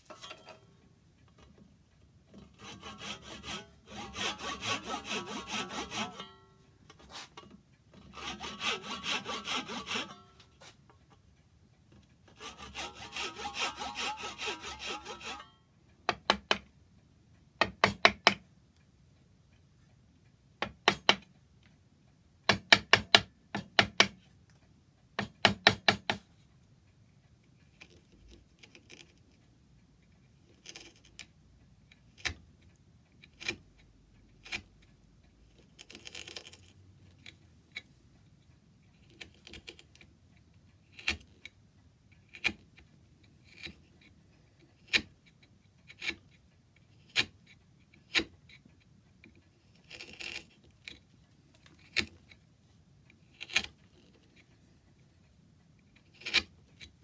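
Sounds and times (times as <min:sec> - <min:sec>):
hand saw cutting wood: 0:02.4 - 0:10.8, 0:12.3 - 0:15.5
short scrape: 0:02.6 - 0:06.4, 0:07.0 - 0:07.5.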